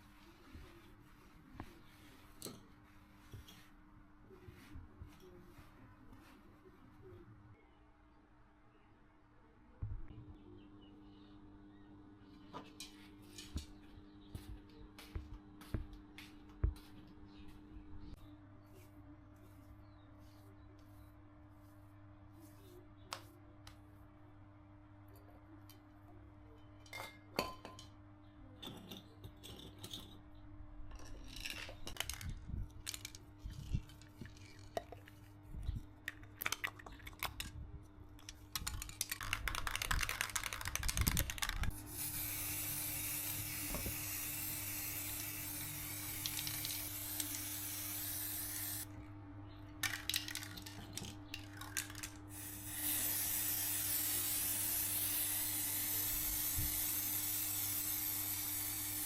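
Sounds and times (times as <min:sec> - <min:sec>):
steady hiss: 0:41.8 - 0:48.9, 0:52.3 - 0:59.0.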